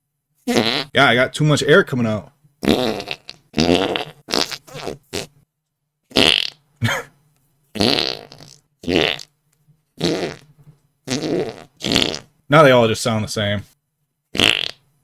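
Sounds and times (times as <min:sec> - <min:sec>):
person making fart noises: 0:00.4 - 0:01.0, 0:02.6 - 0:05.4, 0:06.1 - 0:07.1, 0:07.7 - 0:09.3, 0:10.0 - 0:12.3, 0:14.3 - 0:14.9.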